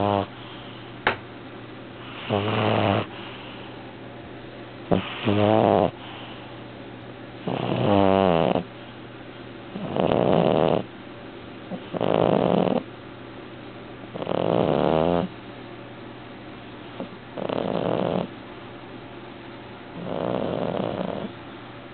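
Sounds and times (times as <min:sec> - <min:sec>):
cat snoring: 0:00.0 - 0:00.6, 0:02.0 - 0:03.6, 0:04.9 - 0:06.4, 0:07.4 - 0:08.7, 0:09.7 - 0:10.9, 0:11.7 - 0:12.9, 0:14.1 - 0:15.3, 0:17.0 - 0:18.3, 0:20.0 - 0:21.4.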